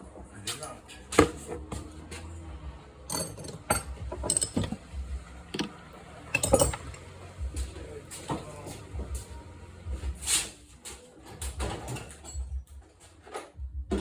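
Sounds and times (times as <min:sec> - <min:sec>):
metal hand tools clinking: 0:03.1 - 0:07.1.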